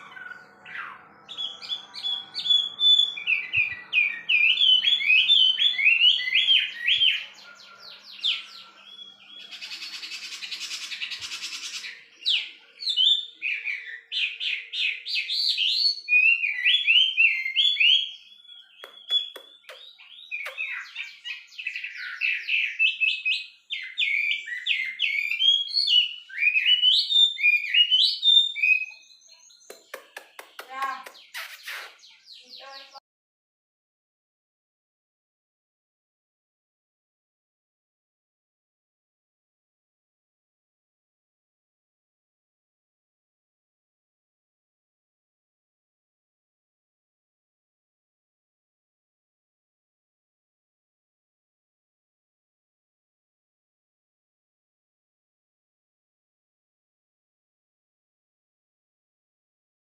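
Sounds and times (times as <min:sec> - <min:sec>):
bird singing whistled phrases: 0:00.0 - 0:07.3, 0:08.2 - 0:29.7.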